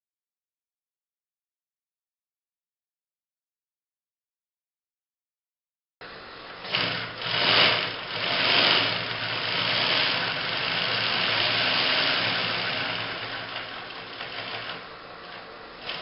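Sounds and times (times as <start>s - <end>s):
sewing machine whirring: 6.5s - 16.0s.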